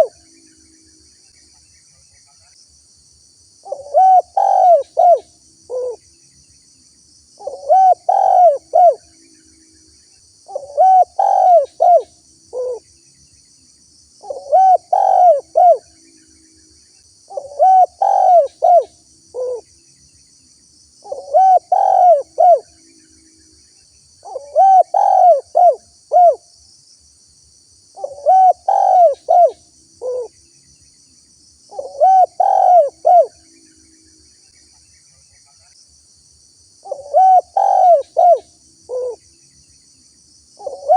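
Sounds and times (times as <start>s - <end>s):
dove cooing: 3.6s - 6.0s, 7.4s - 9.0s, 10.5s - 12.8s, 14.2s - 15.8s, 17.3s - 19.7s, 21.0s - 22.7s, 24.2s - 26.4s, 28.0s - 30.3s, 31.7s - 33.4s, 36.8s - 39.2s, 40.6s - 40.9s.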